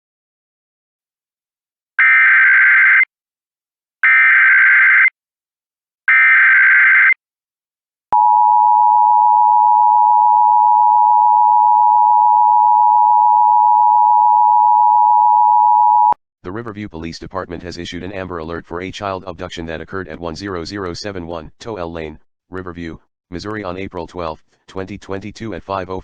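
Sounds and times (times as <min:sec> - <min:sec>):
long steady attention tone: 0:08.2 - 0:16.2.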